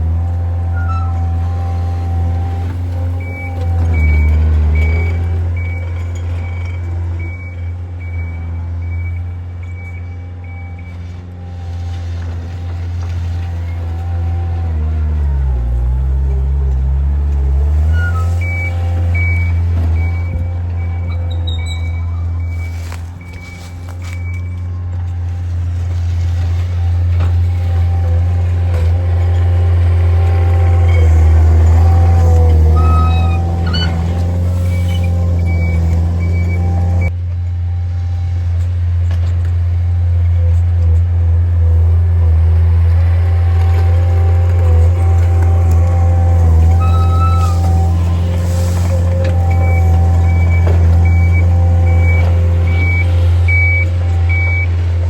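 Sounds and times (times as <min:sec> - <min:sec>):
diesel truck engine running: 0:00.0 - 0:55.0
reversing alarm beeping: 0:03.2 - 0:11.1, 0:17.9 - 0:25.0, 0:30.2 - 0:37.1, 0:45.4 - 0:55.0.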